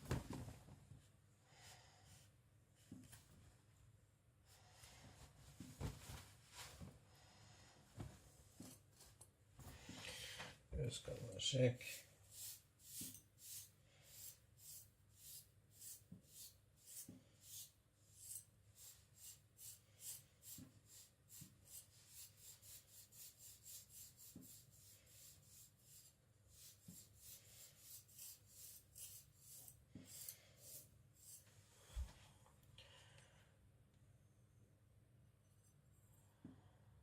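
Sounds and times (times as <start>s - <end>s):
blade on whetstone strokes: 11.8s - 31.5s.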